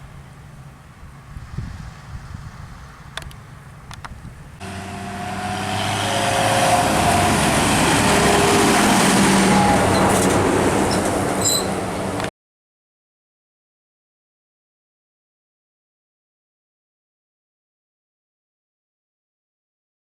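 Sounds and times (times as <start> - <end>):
farm machine diesel engine: 0.0 - 12.3
whining tones: 4.6 - 12.3.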